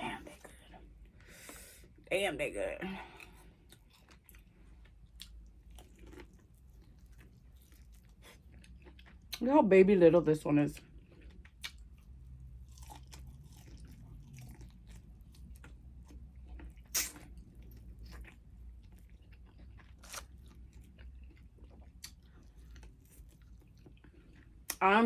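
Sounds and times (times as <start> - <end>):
chewing and biting: 3.2 - 9.4, 10.8 - 24.8
small crunches: 16.4 - 23.9.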